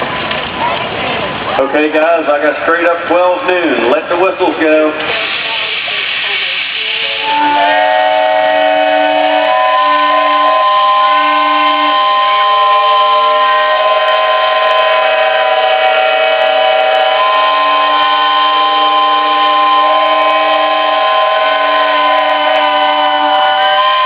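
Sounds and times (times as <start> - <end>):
steam whistles blowing: 5.2 - 24.0.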